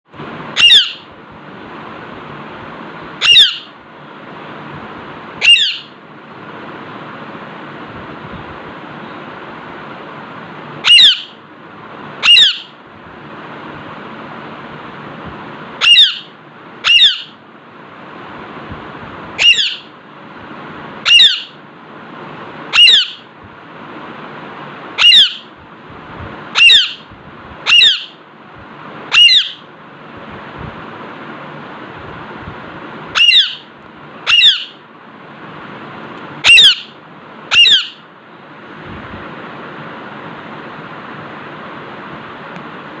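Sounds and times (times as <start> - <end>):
steady background hiss: 0.1 - 43.0
parakeet squawking: 0.5 - 1.1, 3.2 - 3.8, 5.4 - 6.0, 10.8 - 11.4, 12.2 - 12.8, 15.8 - 17.4, 19.4 - 20.0, 21.0 - 21.6, 22.7 - 23.3, 25.0 - 25.6, 26.5 - 28.2, 29.1 - 29.7, 33.1 - 34.8, 36.4 - 38.1.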